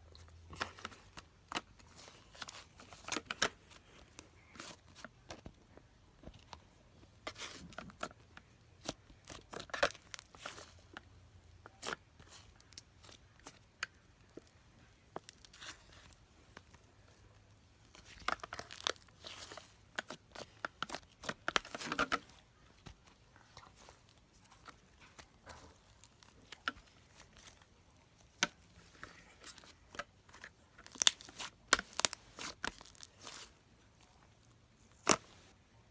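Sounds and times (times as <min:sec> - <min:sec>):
slime crackling and popping: 0:17.9 - 0:22.1, 0:30.8 - 0:33.5.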